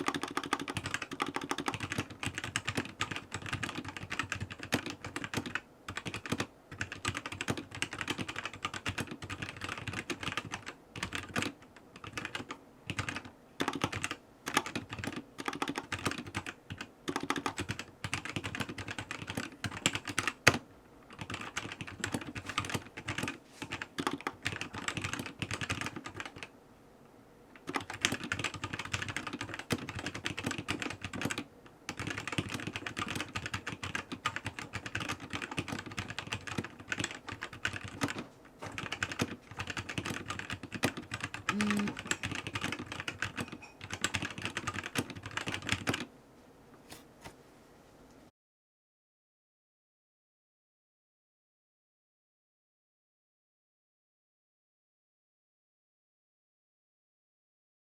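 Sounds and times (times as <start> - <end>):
fast typing on mechanical keyboard: 0.0 - 26.5, 27.6 - 46.1.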